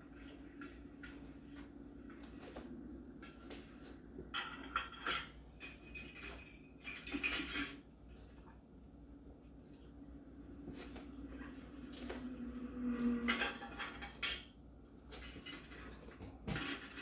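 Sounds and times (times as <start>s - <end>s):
dishes and cutlery clattering: 4.3s - 7.9s, 13.2s - 14.5s, 15.1s - 17.0s.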